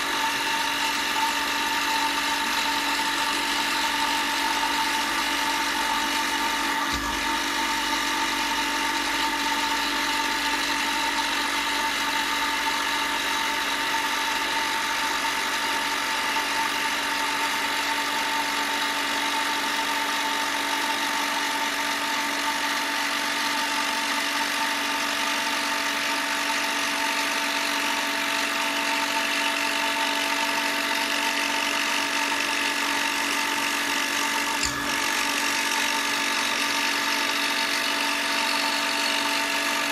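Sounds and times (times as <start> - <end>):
power tool motor working wood: 0.0 - 39.9.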